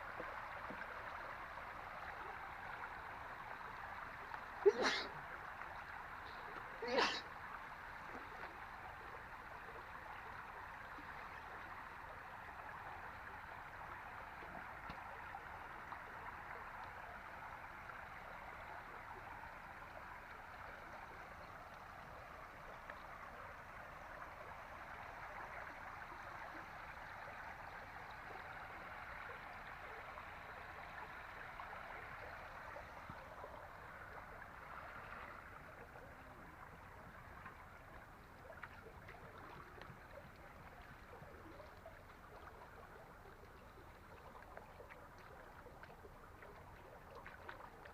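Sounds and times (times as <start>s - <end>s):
floodwater rushing: 0.0s - 24.0s.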